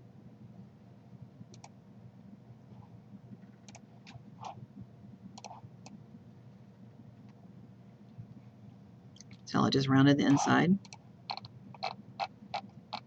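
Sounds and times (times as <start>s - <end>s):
faint low electrical hum: 0.0s - 13.0s
computer mouse clicking: 1.5s - 1.8s, 3.4s - 4.6s, 5.4s - 6.0s, 10.8s - 13.0s.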